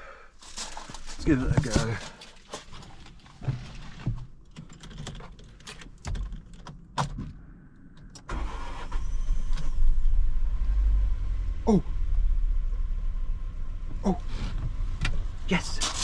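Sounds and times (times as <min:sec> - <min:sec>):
car engine starting and idling: 0:05.2 - 0:16.0.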